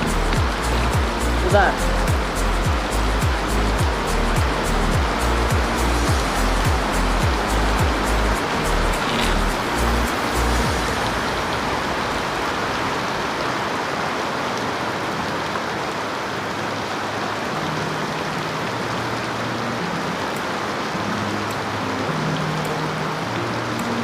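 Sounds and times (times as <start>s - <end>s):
faint low steady notes: 0.0s - 11.6s
rain falling: 0.0s - 24.0s.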